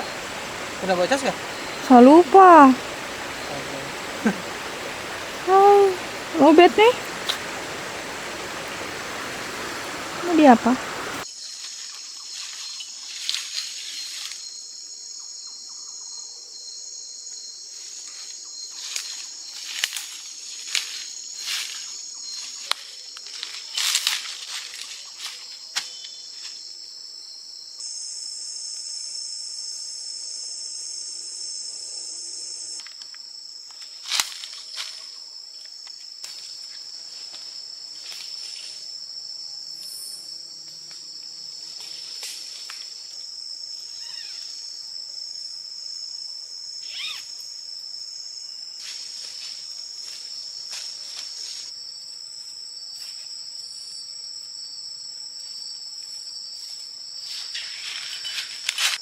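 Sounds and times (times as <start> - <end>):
higher insect buzzing: 0.0 - 11.2
insects buzzing drone: 0.0 - 22.6, 26.1 - 59.0.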